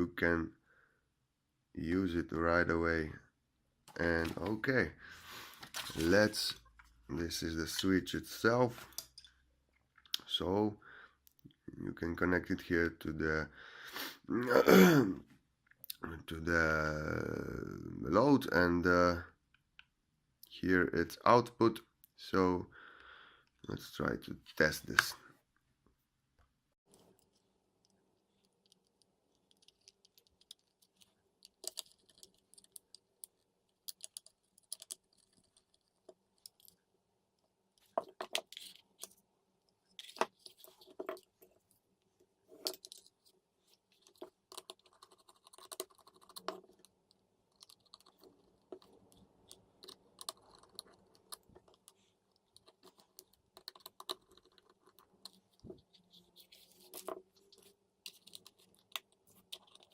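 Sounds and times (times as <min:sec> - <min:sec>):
small plastic parts clicking: 0:26.9 - 0:41.7, 0:42.5 - 0:59.9.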